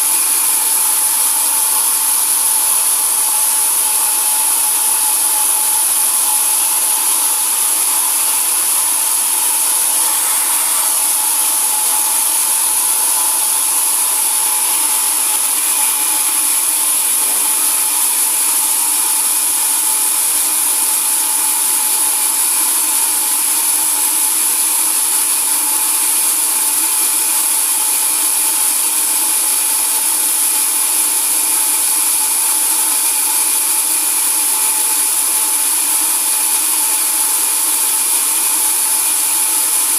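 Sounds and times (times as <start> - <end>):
high hiss: 0.0 - 24.7
sawmill saw whining: 0.0 - 39.9.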